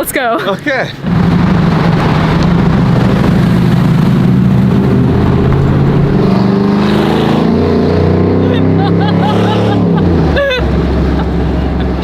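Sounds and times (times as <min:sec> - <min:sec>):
pickup truck engine running: 0:01.0 - 0:06.3.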